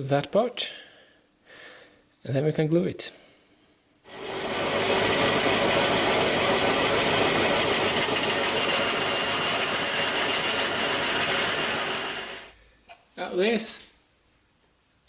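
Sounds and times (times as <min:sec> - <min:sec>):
power tool cutting plywood: 0:04.1 - 0:12.5.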